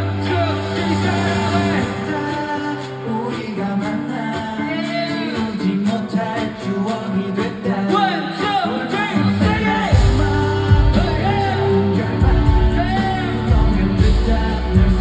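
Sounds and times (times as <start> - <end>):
heavy bass: 0.0 - 2.7, 9.2 - 15.0
loud band playing: 0.0 - 15.0
men singing: 0.0 - 15.0.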